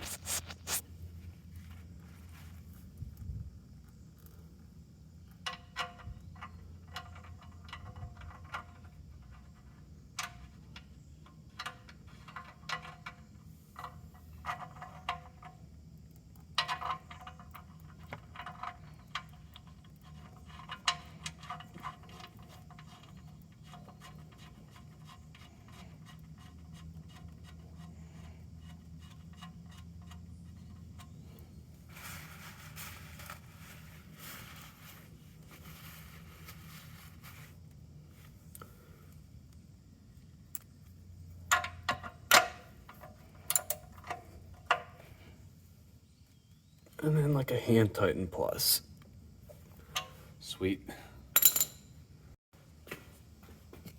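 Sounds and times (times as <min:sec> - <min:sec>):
metal tools clinking on metal: 0:41.4 - 0:44.8, 0:51.4 - 0:52.0.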